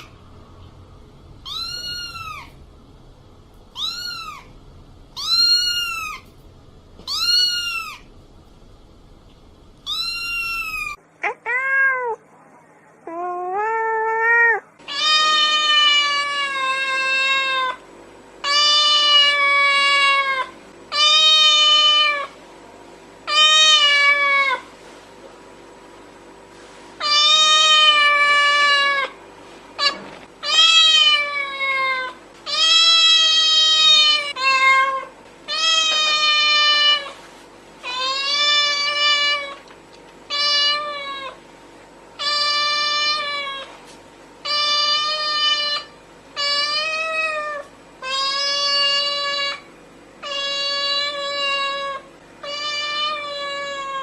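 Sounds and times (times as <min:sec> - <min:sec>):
cat meowing: 0:01.4 - 0:02.6, 0:03.7 - 0:04.6, 0:05.2 - 0:06.3, 0:07.0 - 0:08.1, 0:09.8 - 0:12.2, 0:13.1 - 0:17.8, 0:29.8 - 0:37.1, 0:50.2 - 0:54.0.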